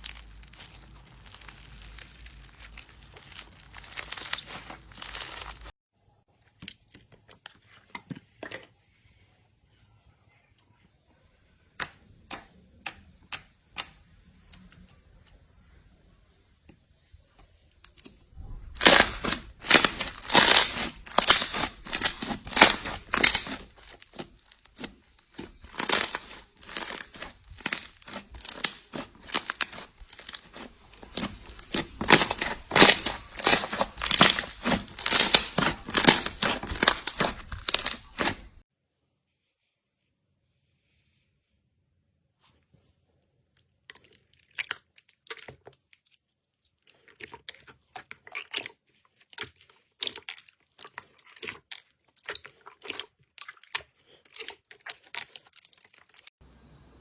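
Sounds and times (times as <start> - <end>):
slime popping and crackling: 0.0 - 5.7, 18.5 - 38.6.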